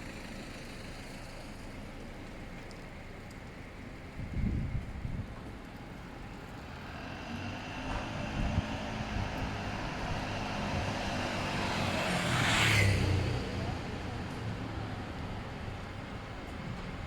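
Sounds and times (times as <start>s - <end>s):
vehicle engine approaching: 6.3s - 17.0s.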